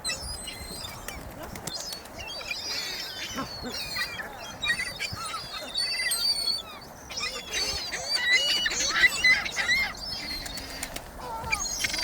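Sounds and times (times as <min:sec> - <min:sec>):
flock of birds chirping: 0:00.0 - 0:12.0.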